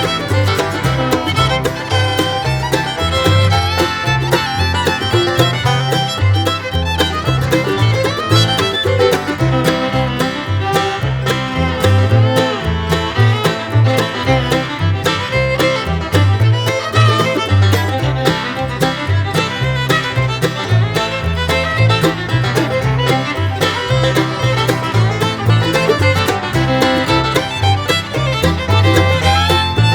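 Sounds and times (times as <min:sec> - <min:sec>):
bluegrass instrumental music: 0:00.0 - 0:29.9.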